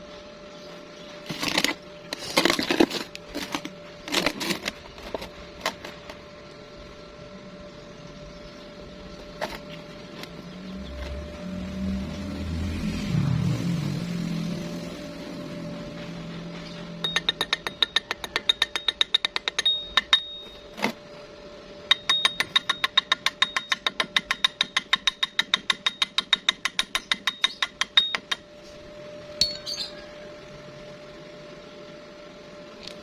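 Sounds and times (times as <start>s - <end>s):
faint steady hum: 0.0s - 33.0s
chipping hammer striking metal: 17.0s - 20.6s, 21.9s - 28.4s.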